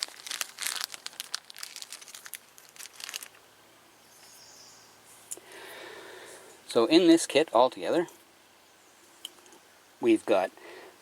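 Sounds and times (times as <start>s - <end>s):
plastic bag crinkling: 0.0s - 3.4s.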